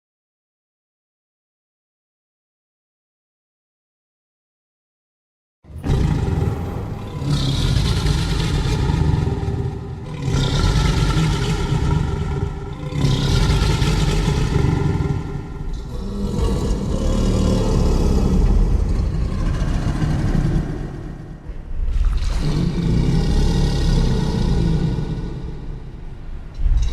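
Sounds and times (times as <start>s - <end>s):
low creature calls: 5.7s - 26.0s
deep rumble: 5.7s - 26.9s.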